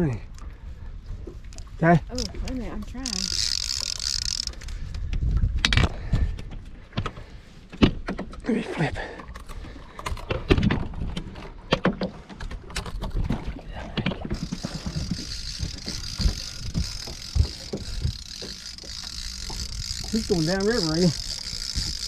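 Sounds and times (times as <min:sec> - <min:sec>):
wind rumble on microphone: 0:04.9 - 0:06.7.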